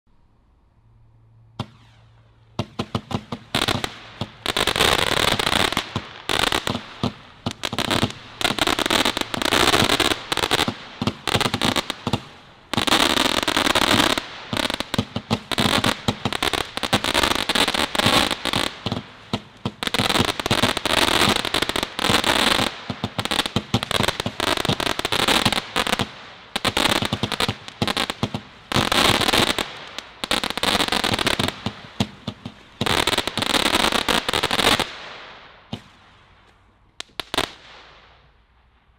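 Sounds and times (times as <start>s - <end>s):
firework candle bangs and crackling: 1.6s - 38.6s.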